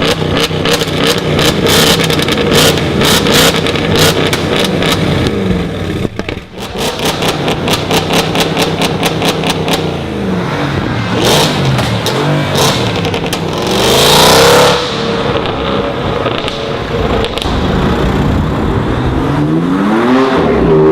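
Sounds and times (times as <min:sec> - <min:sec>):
car engine revving: 0:00.0 - 0:20.9
exhaust crackles: 0:15.2 - 0:20.9.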